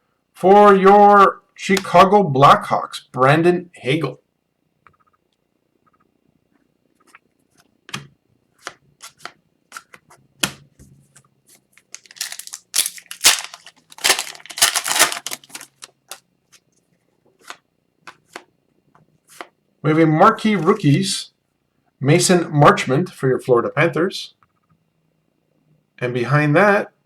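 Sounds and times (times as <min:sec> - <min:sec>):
foil wrapper crinkling and tearing: 0:11.8 - 0:16.2.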